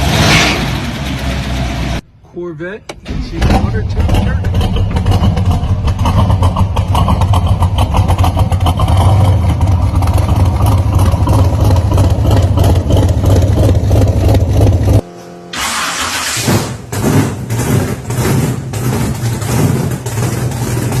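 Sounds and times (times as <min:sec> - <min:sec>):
car engine running: 0:02.9 - 0:21.0.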